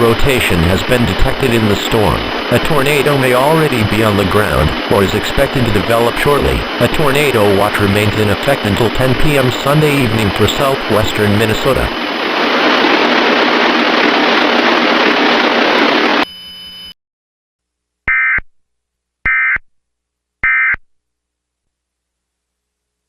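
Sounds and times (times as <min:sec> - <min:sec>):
static hiss: 0:00.0 - 0:16.2.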